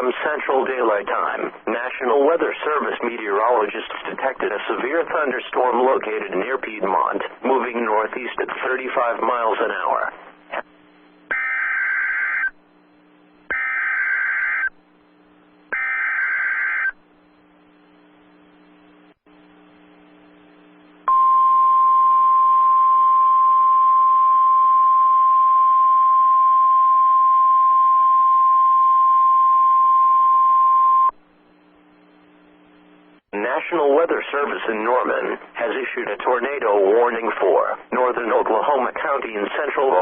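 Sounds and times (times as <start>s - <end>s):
steady alarm tone: 11.3s - 12.6s, 13.4s - 14.8s, 15.7s - 17.0s.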